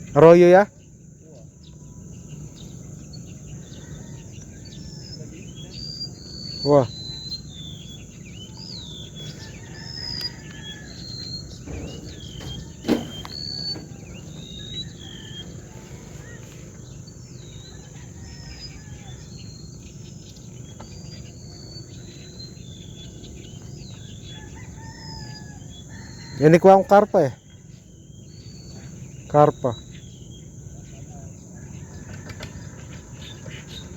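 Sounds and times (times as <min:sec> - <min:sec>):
birds chirping: 0:00.0 - 0:33.9
insect drone: 0:00.0 - 0:33.9
sharp knock: 0:11.7 - 0:14.5.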